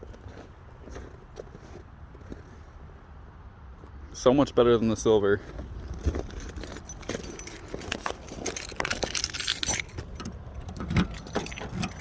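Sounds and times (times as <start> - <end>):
keys jangling: 6.2 - 12.0
car door handle and latch clicking: 7.9 - 12.0.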